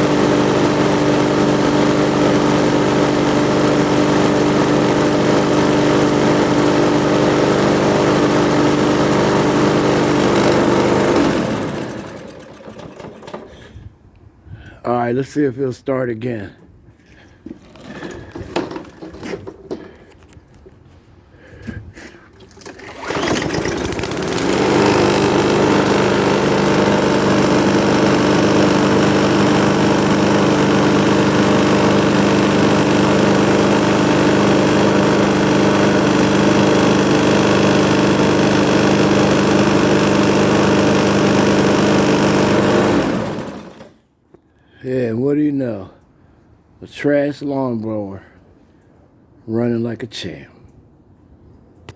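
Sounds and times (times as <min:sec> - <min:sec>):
lawn mower engine running: 0:00.0 - 0:13.8, 0:17.4 - 0:20.6, 0:22.3 - 0:44.0
handling clicks and knocks: 0:17.5 - 0:20.8.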